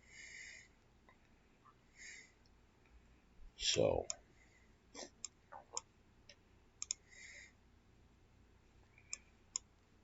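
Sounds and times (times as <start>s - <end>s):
computer mouse clicking: 5.0s - 7.0s.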